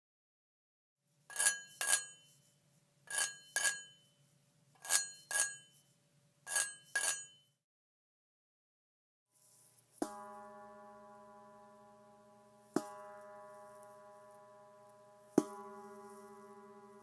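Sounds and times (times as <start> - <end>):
ringing clinks of hard objects: 3.1 - 4.2, 6.5 - 7.5.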